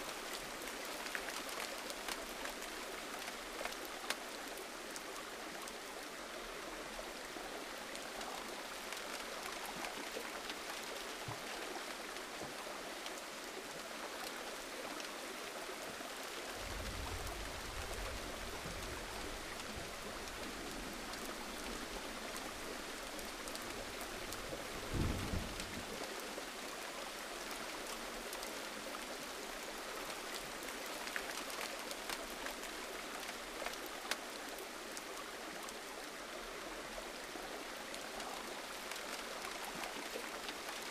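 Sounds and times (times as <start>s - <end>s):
gentle rain falling: 0.0s - 40.9s.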